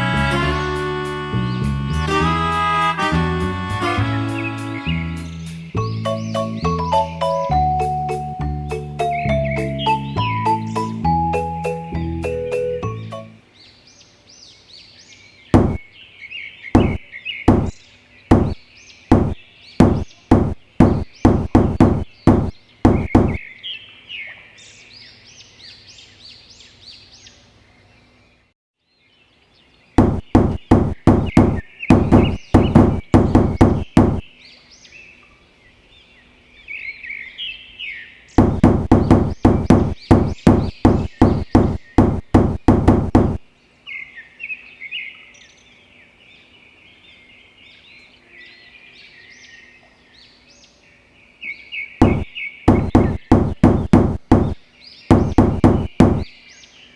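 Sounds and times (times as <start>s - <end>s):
birds chirping: 4.2s - 7.5s, 16.7s - 23.7s, 30.0s - 34.4s, 38.4s - 43.4s
rapid sharp knocks: 15.6s - 15.9s, 16.8s - 23.4s, 30.0s - 34.3s, 38.4s - 43.5s, 52.0s - 56.3s.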